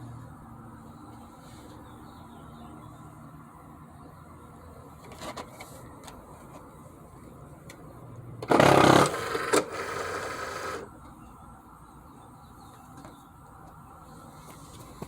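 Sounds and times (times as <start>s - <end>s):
cutting machine mechanical noise: 8.4s - 10.9s.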